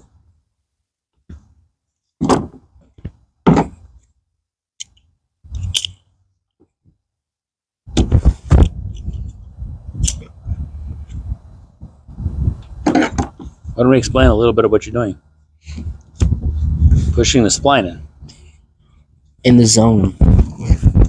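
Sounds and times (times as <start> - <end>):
sharp knocks: 2.2 - 3.8.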